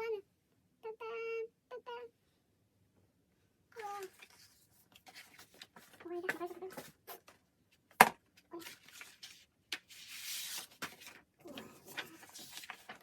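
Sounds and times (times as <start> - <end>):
paper rustling: 3.8 - 13.0.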